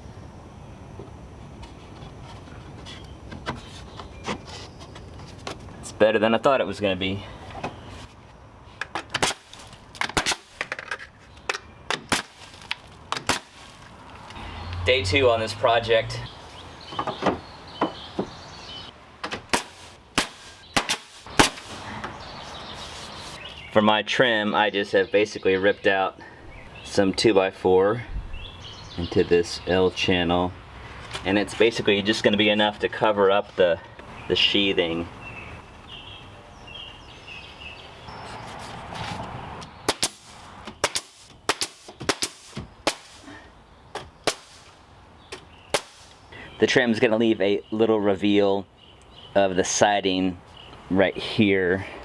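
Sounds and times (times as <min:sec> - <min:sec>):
nail gun firing into wood: 0:08.9 - 0:10.8, 0:11.9 - 0:12.6, 0:13.2 - 0:13.6, 0:19.3 - 0:21.8, 0:39.9 - 0:43.3, 0:44.0 - 0:44.7, 0:45.8 - 0:46.2.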